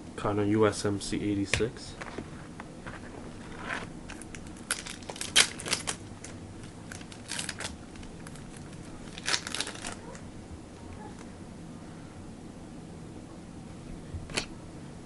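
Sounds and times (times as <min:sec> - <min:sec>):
trading cards rustling: 0:02.0 - 0:10.2.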